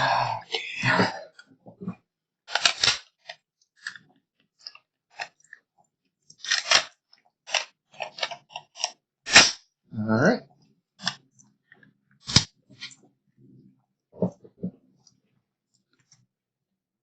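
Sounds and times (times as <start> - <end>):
sharp crack: 9.3 - 9.6.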